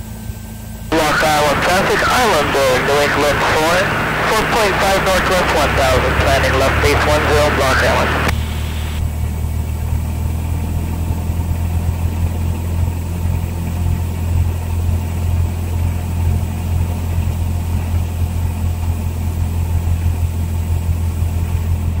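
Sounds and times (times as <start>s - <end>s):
aircraft piston engine drone: 0.9s - 9.1s.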